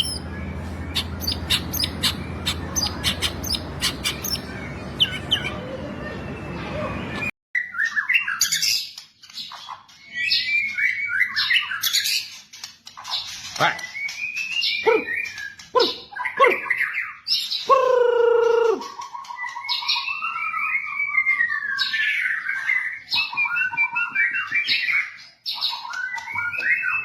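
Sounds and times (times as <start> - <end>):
harsh buzzy bird call: 0.0 - 5.6
songbird whistling and warbling: 0.0 - 8.7, 19.2 - 27.0.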